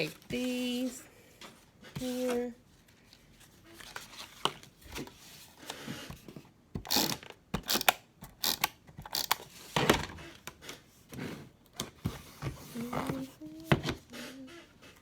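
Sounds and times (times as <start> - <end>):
paper crinkling and rustling: 2.0 - 5.8.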